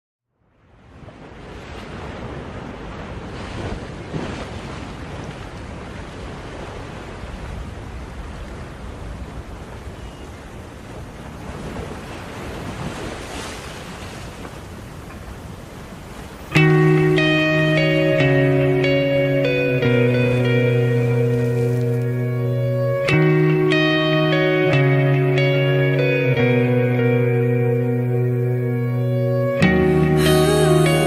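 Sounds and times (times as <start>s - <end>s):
ocean surf washing: 0.6s - 31.0s
plucked guitar: 16.5s - 31.0s.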